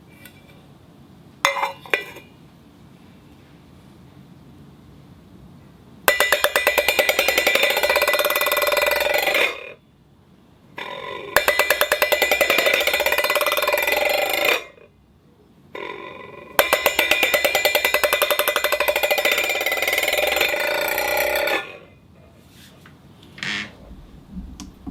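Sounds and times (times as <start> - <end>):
ball rattling in metal bowl: 6.1 - 9.6, 11.4 - 14.8, 16.6 - 21.8.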